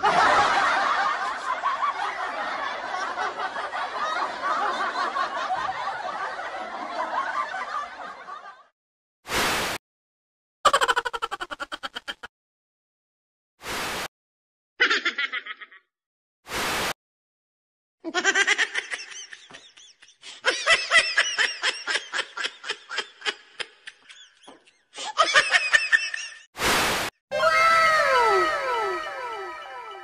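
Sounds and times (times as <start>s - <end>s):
people laughing: 0.0s - 8.7s, 18.1s - 26.5s, 27.4s - 30.0s.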